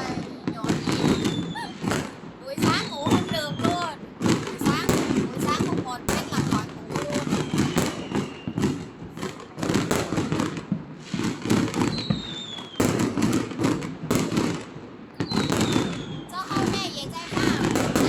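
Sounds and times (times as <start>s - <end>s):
falling firework whistle: 0.0s - 4.0s, 7.1s - 9.3s, 11.0s - 13.3s, 15.2s - 18.0s
fireworks and firecrackers banging: 0.0s - 18.0s.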